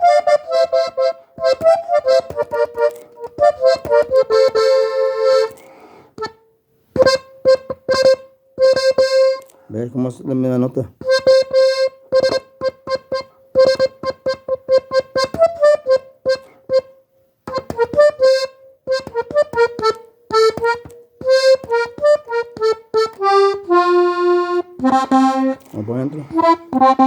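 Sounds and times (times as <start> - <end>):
button accordion playing: 0.0 - 9.6, 11.0 - 27.0.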